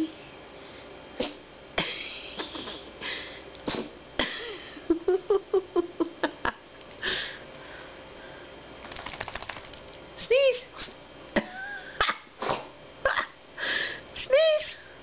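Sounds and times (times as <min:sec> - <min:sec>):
dog sneezing: 0:01.2 - 0:01.4, 0:03.6 - 0:04.0, 0:10.6 - 0:11.0.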